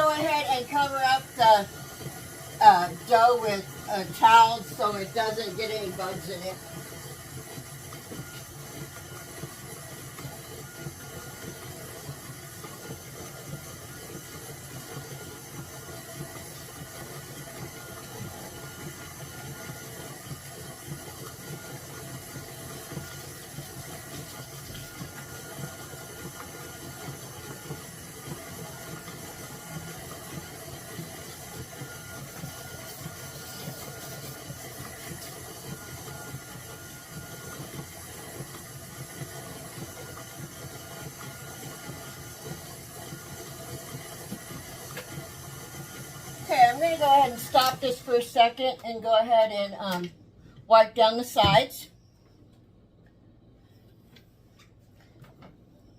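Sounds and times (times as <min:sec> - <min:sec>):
stand mixer motor whining: 0:00.0 - 0:48.2.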